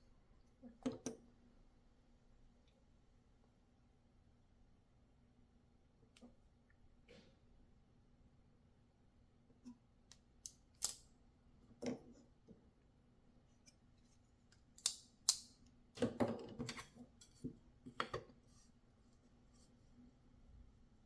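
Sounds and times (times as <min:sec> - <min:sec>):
folding knife clicking open and shut: 0:10.4 - 0:11.1, 0:14.8 - 0:15.5.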